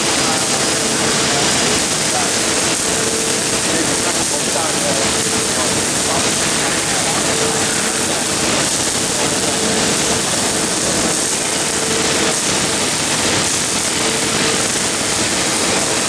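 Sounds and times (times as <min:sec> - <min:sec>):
welding arc: 0:00.0 - 0:16.0.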